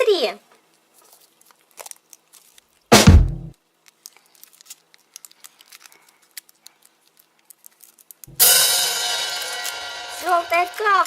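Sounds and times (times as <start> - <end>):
wrapper clicks and rustles: 0.6 - 2.9, 3.6 - 8.4, 9.2 - 11.0
cymbal crash in music: 8.3 - 10.3.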